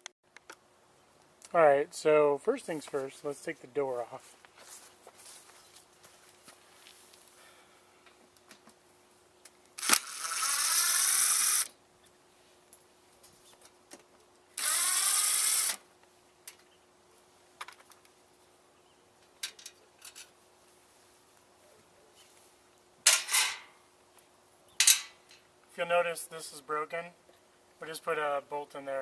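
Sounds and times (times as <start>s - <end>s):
power drill driving screws: 9.8s - 11.7s, 14.6s - 15.8s
clicks and knocks of parts handled: 19.2s - 20.3s, 24.7s - 25.4s.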